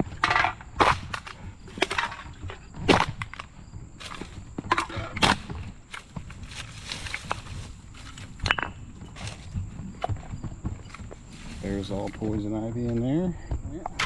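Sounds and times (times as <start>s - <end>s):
footsteps crunching through dry grass: 3.5s - 13.4s.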